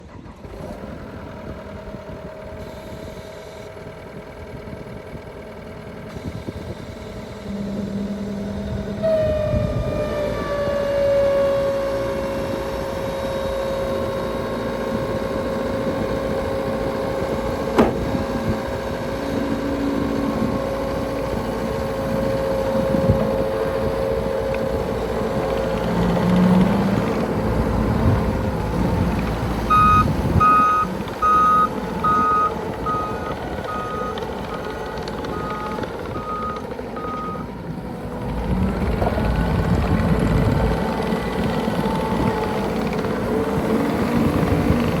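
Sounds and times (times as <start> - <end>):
diesel engine running: 0.0 - 45.0
high whine: 5.8 - 37.5.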